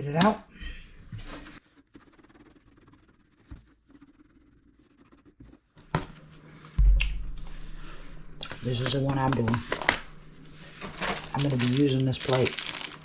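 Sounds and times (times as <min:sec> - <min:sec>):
sharp click: 0:06.8 - 0:07.5
heavy thump: 0:06.8 - 0:09.4
faint handling sounds: 0:07.4 - 0:13.0.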